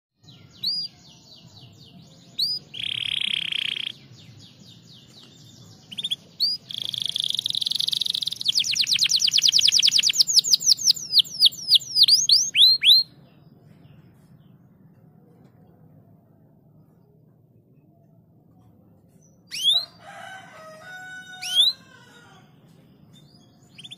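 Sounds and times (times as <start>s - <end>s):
canary singing: 0.2s - 13.3s, 19.3s - 23.9s.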